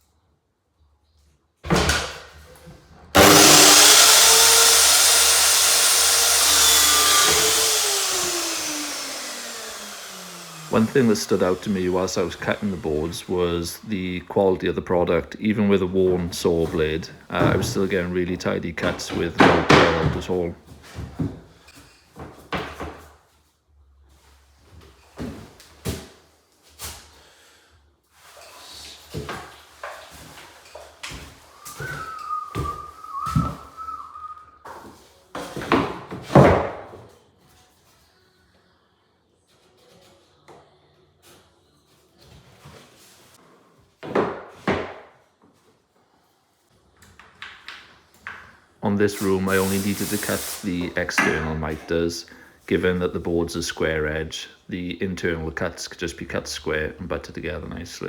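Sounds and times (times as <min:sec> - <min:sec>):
electric mitre saw cutting wood: 0:03.2 - 0:14.1, 0:49.2 - 0:51.4
wooden boards knocking and clunking: 0:18.8 - 0:21.5, 0:44.0 - 0:45.1.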